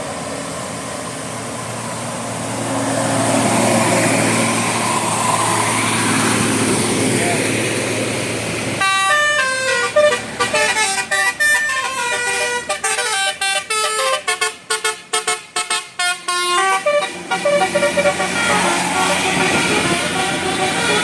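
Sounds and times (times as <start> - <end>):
multi-tone musical bus horn: 8.8 - 21.0.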